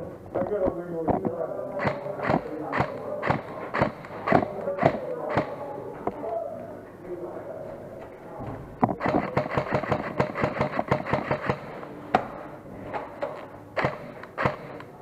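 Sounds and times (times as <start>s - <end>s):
airsoft gun full-auto burst: 9.0s - 11.7s, 13.8s - 14.8s
airsoft gun single shots: 9.0s - 11.7s, 13.8s - 14.8s.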